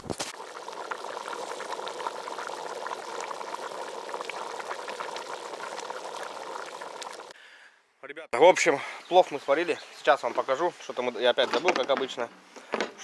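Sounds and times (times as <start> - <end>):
pot bubbling with small pops: 0.0 - 7.4, 11.2 - 13.0.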